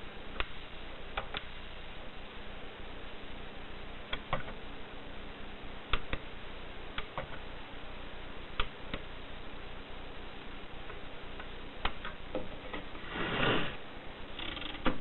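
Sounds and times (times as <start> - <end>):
steady hum and hiss: 0.0 - 15.0.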